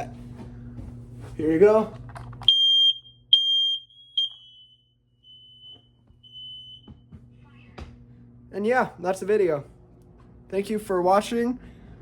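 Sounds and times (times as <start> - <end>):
smoke alarm beeping: 2.4 - 7.1.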